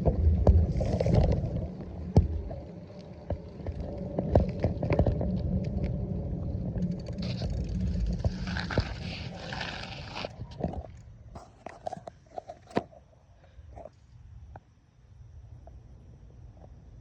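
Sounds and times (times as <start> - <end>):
wind rumble on microphone: 0.0 - 12.0.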